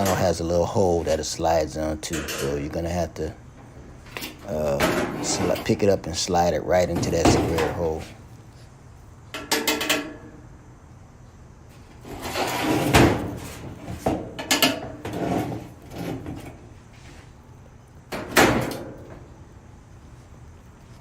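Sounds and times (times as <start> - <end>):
metal panel clunking: 3.5 - 6.1, 6.7 - 8.1, 9.3 - 10.4
metal panel scraping: 3.9 - 6.2, 11.8 - 17.3.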